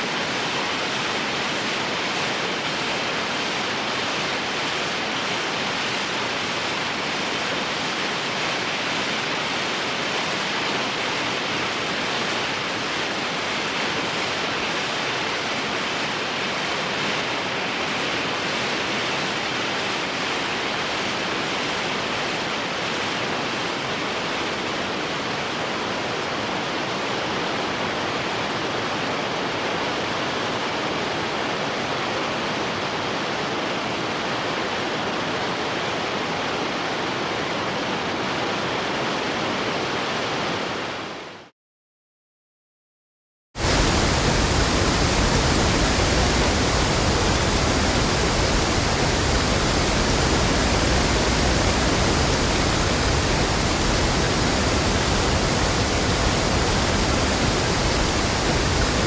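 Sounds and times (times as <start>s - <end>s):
waterfall rushing: 43.6s - 59.0s.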